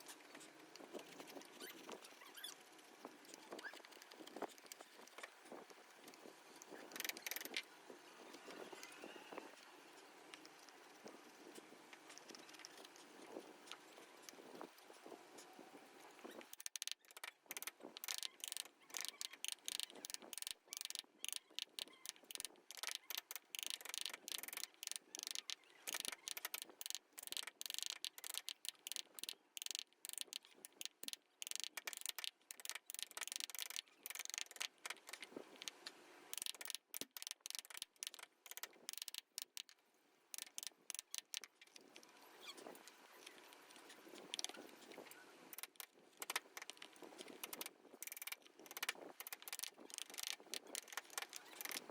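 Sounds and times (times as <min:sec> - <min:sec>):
carving tool scraping wood: 0:40.4 - 0:51.9.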